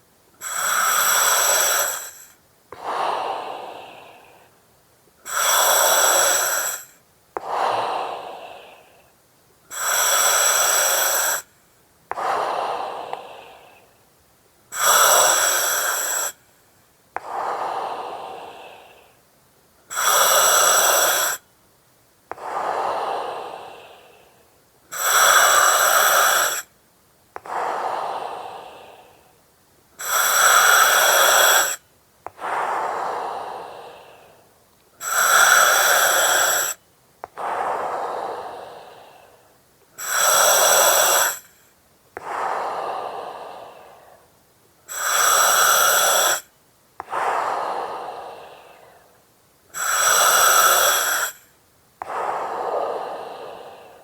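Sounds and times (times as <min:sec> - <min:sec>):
breathing through oxygen mask: 0:00.4 - 0:04.5, 0:05.2 - 0:09.1, 0:09.7 - 0:11.5, 0:14.7 - 0:16.4, 0:22.3 - 0:26.7, 0:27.4 - 0:29.3, 0:30.0 - 0:41.6, 0:42.2 - 0:44.3, 0:44.9 - 0:49.1, 0:49.7 - 0:54.0.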